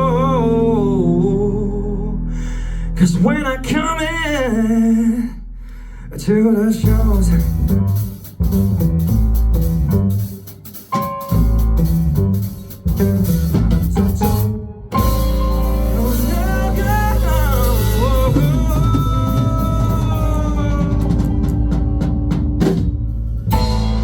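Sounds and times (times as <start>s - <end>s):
funk band playing: 6.8s - 24.0s.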